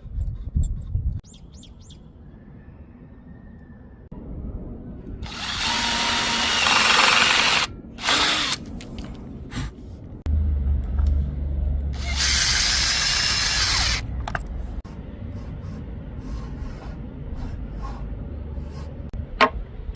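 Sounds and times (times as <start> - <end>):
power drill drilling into wood: 5.3 - 8.6, 12.0 - 14.0.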